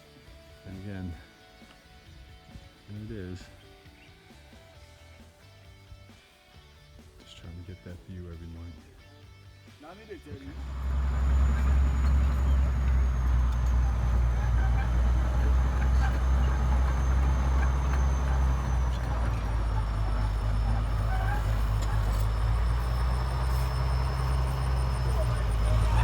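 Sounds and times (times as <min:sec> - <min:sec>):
bulldozer diesel engine droning: 0:10.3 - 0:26.0
faint high whine: 0:10.4 - 0:26.0.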